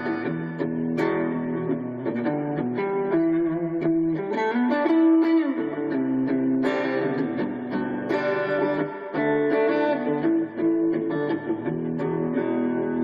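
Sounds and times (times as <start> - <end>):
electric guitar through small amplifier: 0.0 - 13.0.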